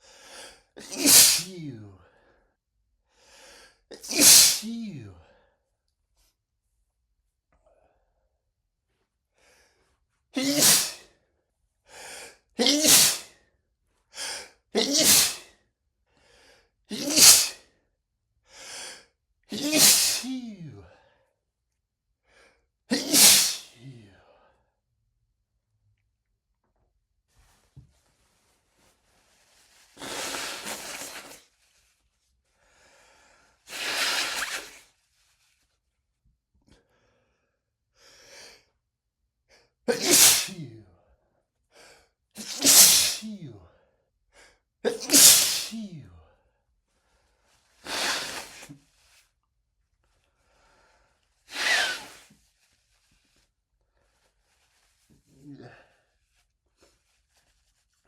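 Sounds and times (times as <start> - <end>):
person blowing nose: 0.4 - 1.6, 3.9 - 4.8, 10.4 - 11.1, 12.1 - 13.3, 14.2 - 15.5, 16.9 - 17.6, 18.6 - 20.7, 22.9 - 24.0, 27.4 - 31.9, 33.6 - 35.5, 39.9 - 40.6, 42.4 - 43.4, 44.9 - 45.9, 47.6 - 49.3, 51.4 - 53.4
man sneezing: 0.4 - 2.0, 3.9 - 5.2, 10.4 - 11.1, 12.6 - 13.3, 14.3 - 15.5, 16.9 - 17.6, 19.5 - 21.0, 22.9 - 24.2, 30.0 - 31.4, 33.7 - 34.8, 39.9 - 40.8, 42.4 - 43.8, 44.8 - 46.2, 47.8 - 48.8, 51.5 - 52.3, 55.3 - 56.0.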